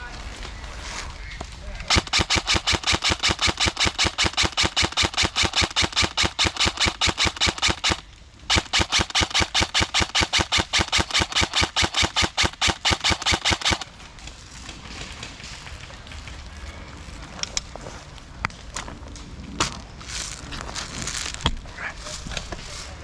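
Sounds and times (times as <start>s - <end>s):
airsoft gun firing rapidly: 1.9s - 13.9s.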